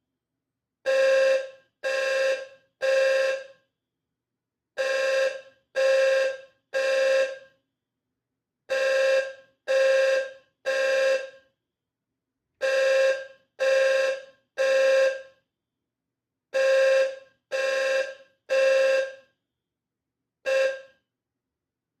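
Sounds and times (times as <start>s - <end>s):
fire alarm horn blasts: 0.8s - 3.6s, 4.8s - 7.6s, 8.7s - 11.5s, 12.6s - 15.4s, 16.5s - 19.4s, 20.4s - 21.1s.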